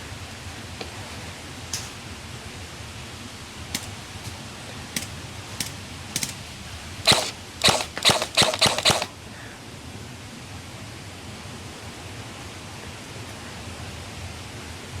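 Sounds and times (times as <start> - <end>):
airsoft guns firing: 3.7 - 9.1.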